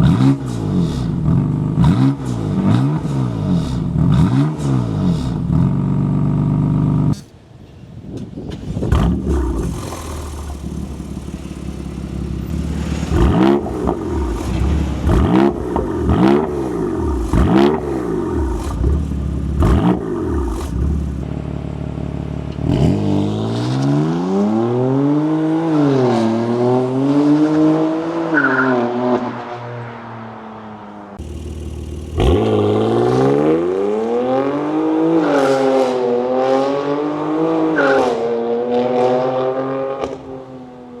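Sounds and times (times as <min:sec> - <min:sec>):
car engine revving: 0:08.9 - 0:29.6, 0:31.2 - 0:40.4.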